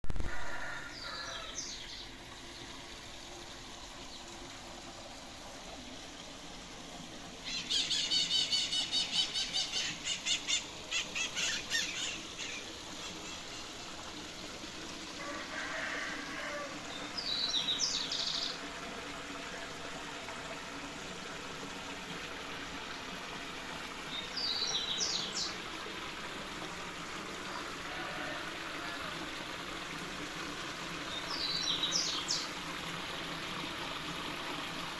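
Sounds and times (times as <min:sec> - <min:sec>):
birds calling: 0:07.4 - 0:13.8.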